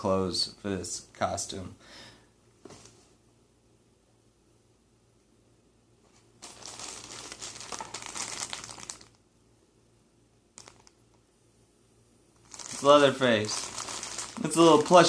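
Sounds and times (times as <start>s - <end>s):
packaging crinkling: 6.4s - 9.2s, 10.6s - 11.0s, 12.4s - 15.0s.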